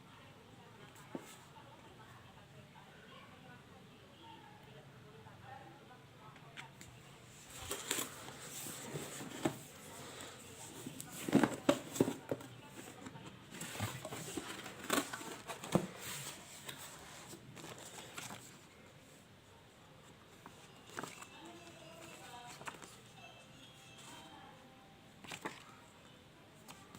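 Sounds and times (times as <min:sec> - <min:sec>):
plastic and cardboard crinkling: 0:07.4 - 0:18.7, 0:20.4 - 0:23.0.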